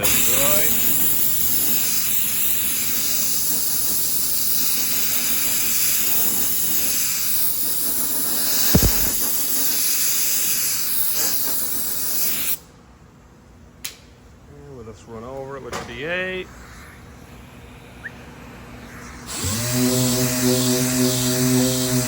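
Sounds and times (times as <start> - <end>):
hiss of blowing air: 0.0 - 12.6
short thump: 8.7 - 9.2.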